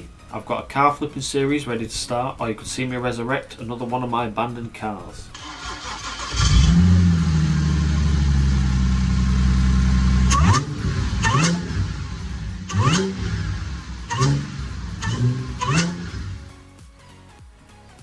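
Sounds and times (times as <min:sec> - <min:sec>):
car engine idling and revving: 0:05.4 - 0:16.5.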